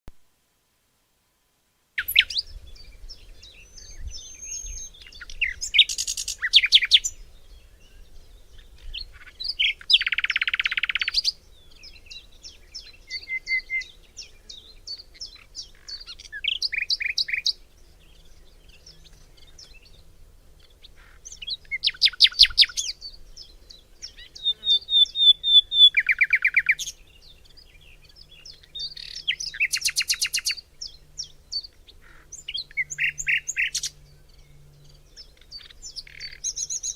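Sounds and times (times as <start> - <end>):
birds singing: 2.0 - 36.9
rapid bird trills: 3.4 - 7.2, 8.5 - 17.6, 20.6 - 36.9.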